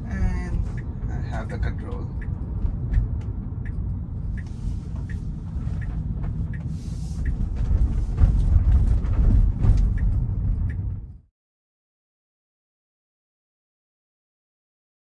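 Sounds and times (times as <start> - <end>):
low road rumble: 0.0 - 11.3.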